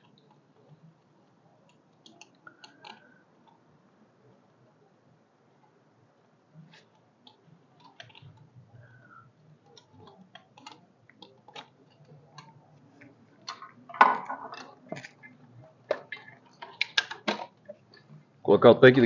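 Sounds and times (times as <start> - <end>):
tools and small parts clicking: 1.7 - 3.6, 6.7 - 9.0, 9.6 - 18.0.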